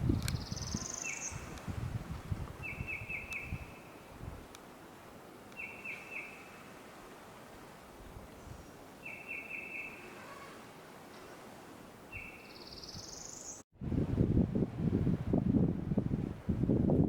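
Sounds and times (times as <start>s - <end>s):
bird calling: 0.3s - 1.5s, 2.6s - 4.1s, 5.5s - 6.8s, 8.5s - 10.7s, 12.1s - 13.6s.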